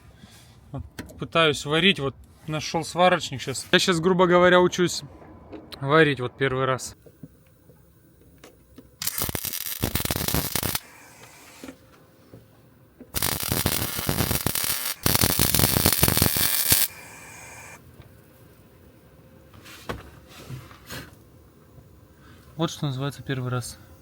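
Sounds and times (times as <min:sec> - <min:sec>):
arc welder crackling: 0:07.0 - 0:11.9, 0:13.1 - 0:18.7.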